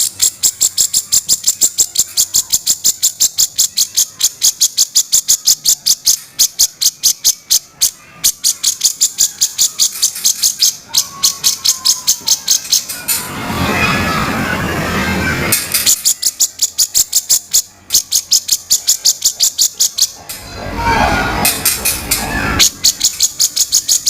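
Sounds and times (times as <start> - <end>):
bulbul chattering call: 0.0 - 13.0, 15.7 - 20.2, 22.6 - 24.0.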